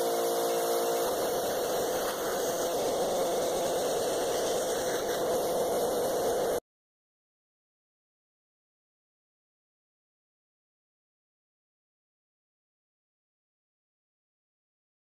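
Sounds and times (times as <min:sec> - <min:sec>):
motor tone: 0:00.0 - 0:06.6
pressure washer water jet hiss: 0:00.1 - 0:06.6.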